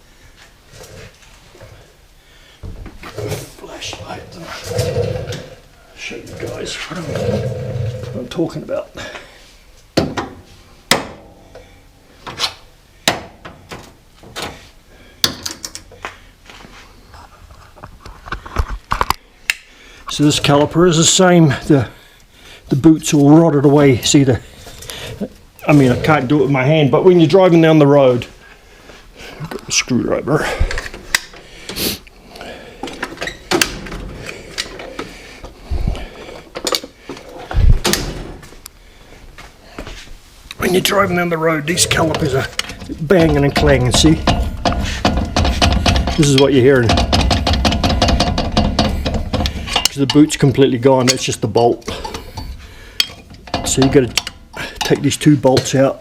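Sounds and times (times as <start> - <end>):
heavy thumps: 40.7 - 50.4
rattling: 40.7 - 55.8
hard objects knocking and clattering: 41.7 - 50.4, 51.0 - 55.9
metal on metal clunks: 41.7 - 50.4, 51.0 - 55.8.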